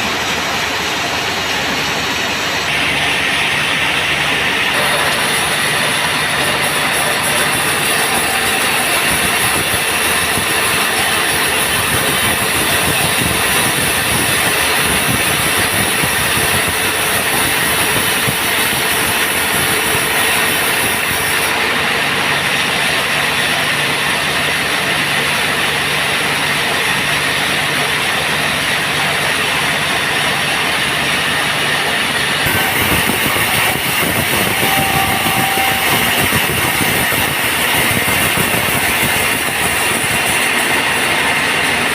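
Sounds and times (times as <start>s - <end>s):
band sawmill cutting log: 0.0s - 41.9s.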